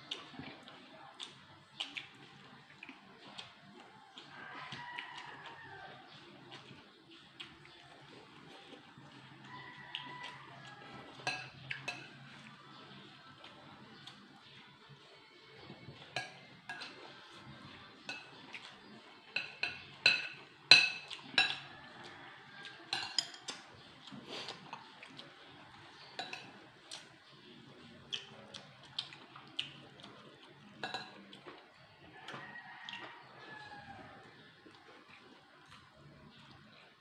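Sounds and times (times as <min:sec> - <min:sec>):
cutlery clinking on plates: 0:11.1 - 0:12.3, 0:16.1 - 0:17.0, 0:18.0 - 0:21.7, 0:22.6 - 0:23.7, 0:26.1 - 0:26.6, 0:30.7 - 0:31.6.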